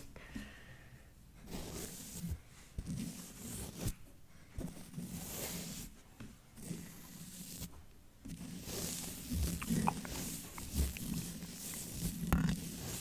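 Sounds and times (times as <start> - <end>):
brushing and scratching on microphone: 4.6 - 6.0, 6.6 - 13.0
wet mouth sounds: 9.2 - 12.1.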